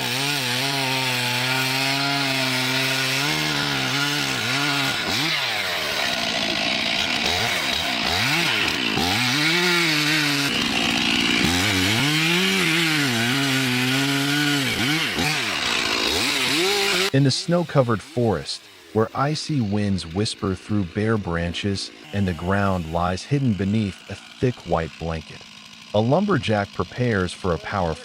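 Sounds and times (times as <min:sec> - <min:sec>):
chainsaw cutting wood: 0:00.0 - 0:28.0.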